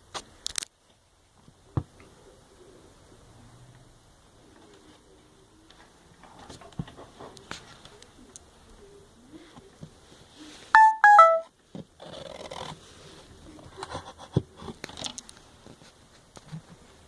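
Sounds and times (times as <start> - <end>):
short electronic beeps: 10.8 - 11.5
faint clicks and rustling: 13.5 - 16.9.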